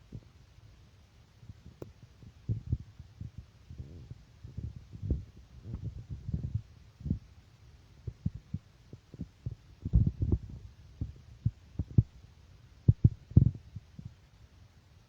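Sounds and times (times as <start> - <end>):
soft low thuds: 2.5 - 7.3, 9.2 - 12.2, 12.9 - 14.1.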